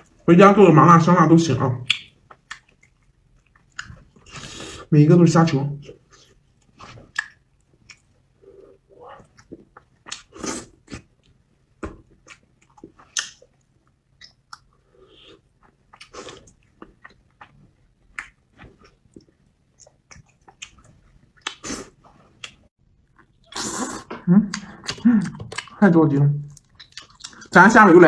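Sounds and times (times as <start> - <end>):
wet mouth clicks and smacks: 1.9 - 4.0, 13.1 - 13.5
person chewing food: 1.9 - 4.9, 6.0 - 25.8, 26.4 - 27.6.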